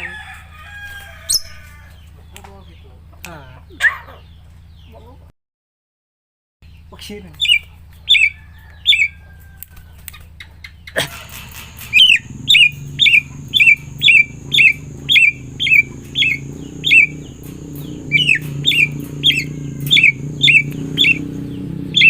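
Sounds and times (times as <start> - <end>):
bird calling sharp falling notes: 10.9 - 22.0.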